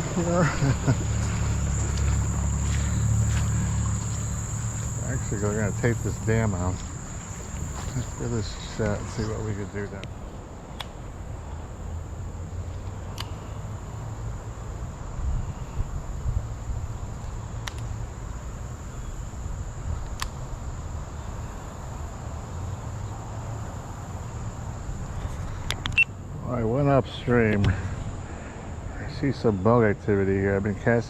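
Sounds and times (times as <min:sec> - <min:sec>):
low rumbling noise: 0:00.0 - 0:12.7
insects chirring: 0:00.0 - 0:31.0.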